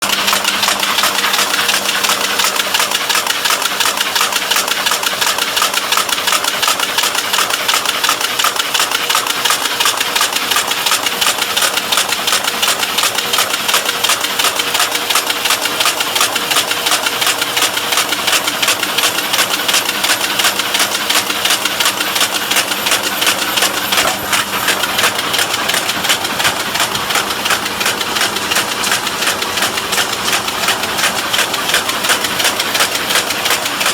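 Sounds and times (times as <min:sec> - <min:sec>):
welding machine clattering: 0:00.0 - 0:33.9
machine hum: 0:16.4 - 0:33.9.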